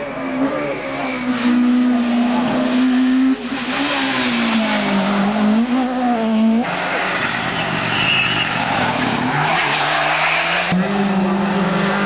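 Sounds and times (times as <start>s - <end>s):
rally car engine at high revs: 0.0s - 12.0s
tyre and road noise: 0.0s - 12.0s.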